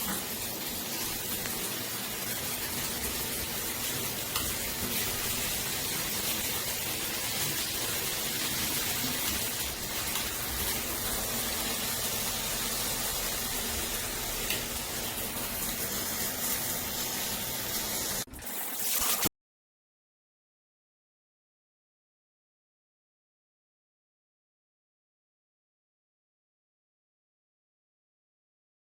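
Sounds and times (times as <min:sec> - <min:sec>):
shower water spraying: 0:00.0 - 0:19.3.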